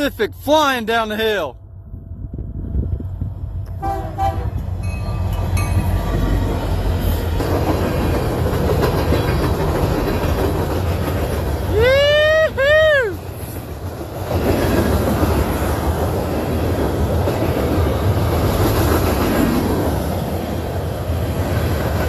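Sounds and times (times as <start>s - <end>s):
freight train rumbling past: 0.0s - 22.0s
locomotive horn blasts: 3.7s - 4.7s.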